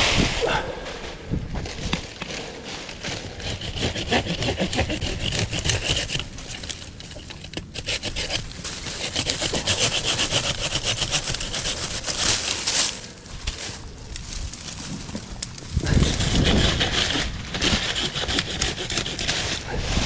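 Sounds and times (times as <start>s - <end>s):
handsaw cutting woody stem: 3.1s - 12.8s, 15.8s - 20.0s.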